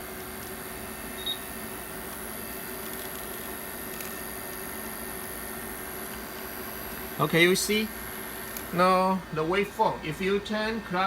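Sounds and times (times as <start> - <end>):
steady electrical hum: 0.0 - 11.0.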